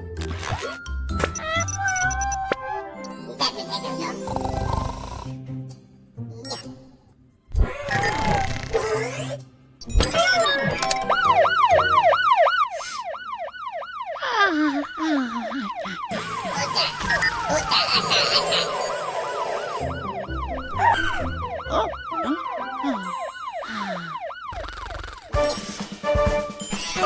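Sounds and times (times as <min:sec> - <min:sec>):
cartoon siren wailing: 0:01.4 - 0:02.9, 0:10.1 - 0:25.4
swooping sound effects: 0:16.1 - 0:25.3.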